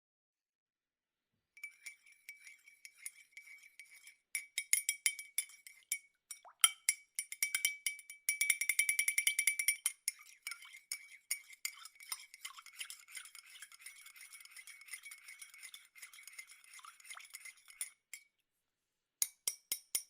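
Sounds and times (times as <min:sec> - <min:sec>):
spoon clinking in a cup: 0:01.6 - 0:18.3, 0:19.2 - 0:20.0.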